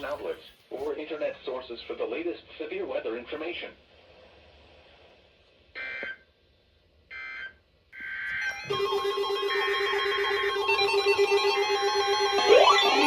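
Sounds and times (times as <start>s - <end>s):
synthesizer music: 8.4s - 13.0s.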